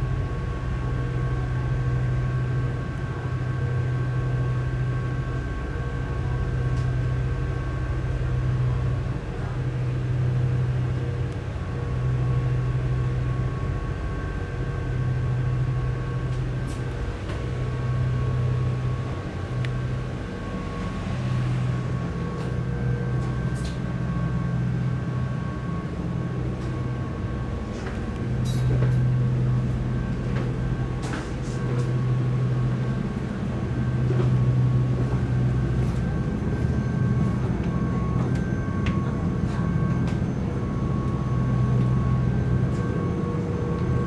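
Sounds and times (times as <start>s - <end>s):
ferry engines droning: 0.0s - 44.0s
thin steady whine: 17.7s - 44.0s.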